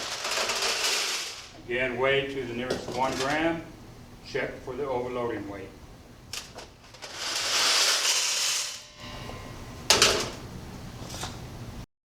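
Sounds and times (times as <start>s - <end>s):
aggregate hissing from sieve: 7.0s - 8.8s.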